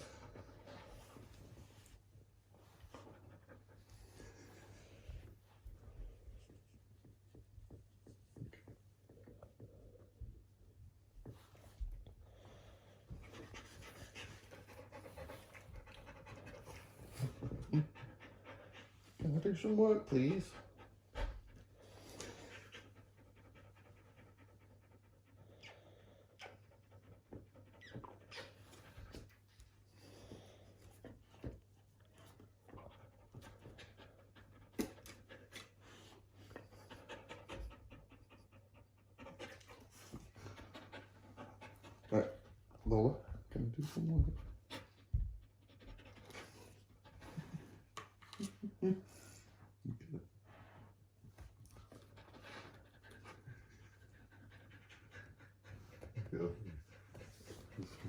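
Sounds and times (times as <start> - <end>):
dog panting rapidly: 12.9 - 48.0, 51.4 - 58.0.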